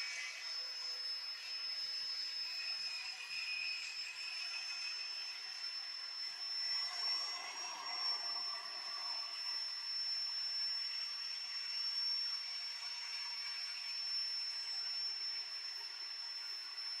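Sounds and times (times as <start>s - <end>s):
electric saw motor whining: 0.0s - 17.0s.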